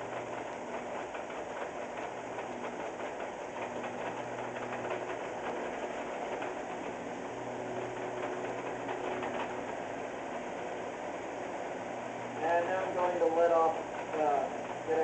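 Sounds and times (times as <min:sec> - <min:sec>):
car engine running: 0:00.0 - 0:15.0
rapid steady knocking: 0:00.0 - 0:15.0.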